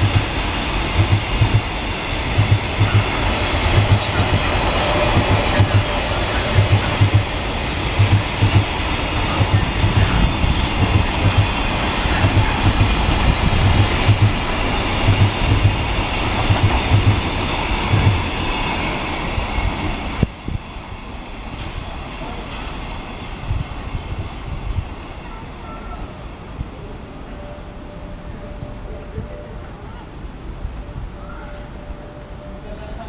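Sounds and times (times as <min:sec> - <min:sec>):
train wheels clacking on rails: 0:00.0 - 0:25.6
train rumble: 0:00.0 - 0:33.0.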